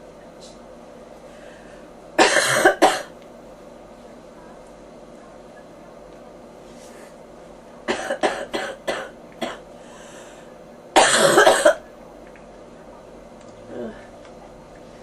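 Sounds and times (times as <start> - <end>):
person coughing: 2.2 - 3.1, 7.9 - 9.6, 11.0 - 11.8.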